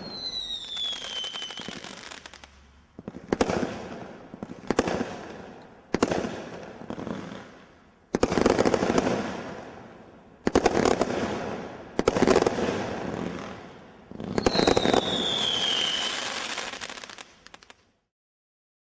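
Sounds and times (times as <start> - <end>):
falling firework whistle: 0.0 - 2.5, 14.3 - 17.8
firework bangs and crackle: 0.0 - 18.0.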